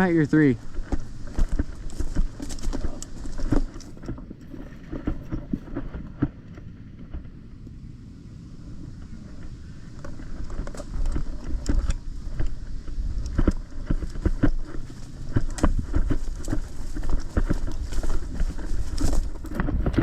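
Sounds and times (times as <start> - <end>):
footsteps crunching through brush: 0.0 - 6.4, 10.3 - 20.0
wind rumbling on microphone: 0.0 - 20.0.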